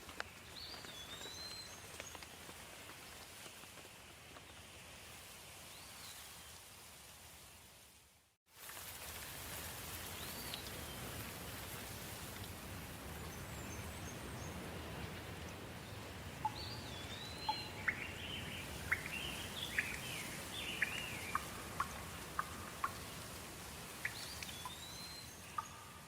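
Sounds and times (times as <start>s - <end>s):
soft rain falling: 0.0s - 26.0s
bird chirping: 15.8s - 23.3s, 24.0s - 26.0s.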